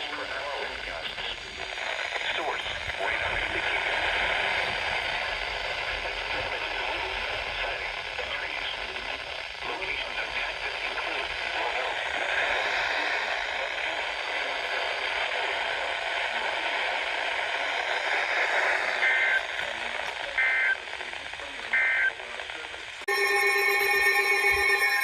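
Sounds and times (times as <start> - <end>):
radio static hiss: 0.0 - 23.4
two-tone data bursts: 17.8 - 19.6, 20.4 - 20.8, 21.8 - 22.2, 23.1 - 25.0.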